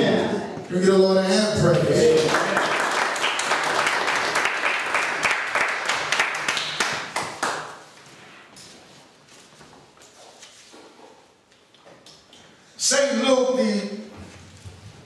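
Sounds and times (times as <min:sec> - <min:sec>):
congregation applauding: 0:01.6 - 0:07.9.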